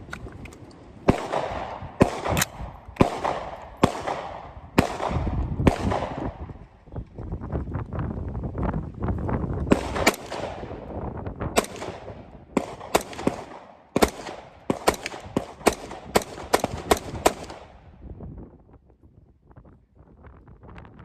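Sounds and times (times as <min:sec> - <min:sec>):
rifle shots: 0:01.0 - 0:06.5, 0:09.7 - 0:17.9.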